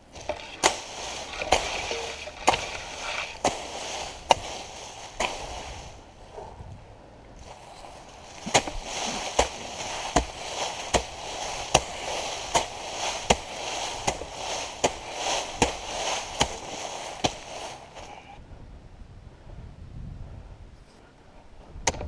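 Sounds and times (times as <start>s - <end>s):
hoe striking brush and dirt: 0.0s - 6.5s, 7.4s - 18.4s
debris rustling and scraping: 0.0s - 6.7s, 7.4s - 18.4s.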